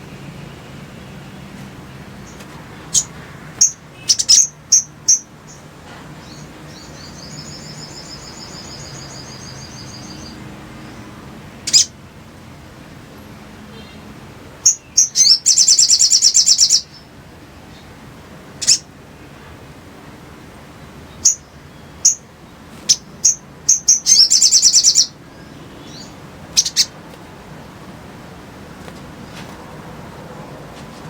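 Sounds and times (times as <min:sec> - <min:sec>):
bird high chips: 0:25.9 - 0:27.0.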